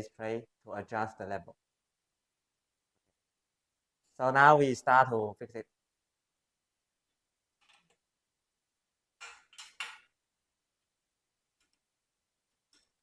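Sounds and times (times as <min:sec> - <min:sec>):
metal hardware clinking: 0:09.2 - 0:10.1.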